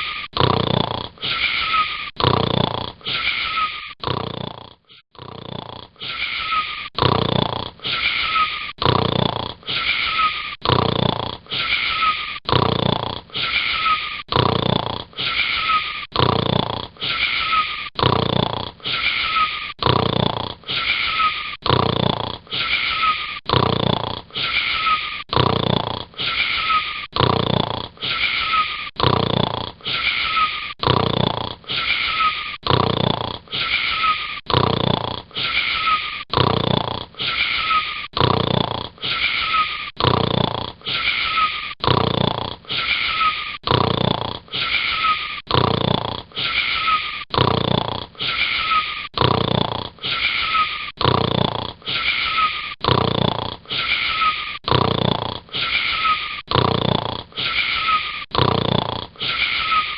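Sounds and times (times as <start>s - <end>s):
wheezy snoring with whistle: 0.0s - 59.9s.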